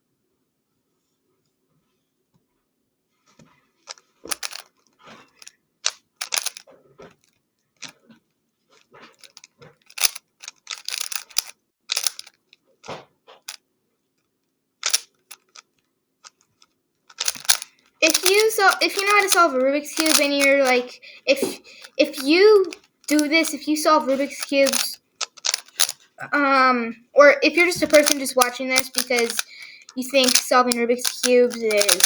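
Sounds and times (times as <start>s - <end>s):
plastic puzzle cube clicking: 3.9s - 4.7s, 5.4s - 6.6s, 9.2s - 12.3s, 14.8s - 15.6s, 17.1s - 26.0s, 27.7s - 32.0s.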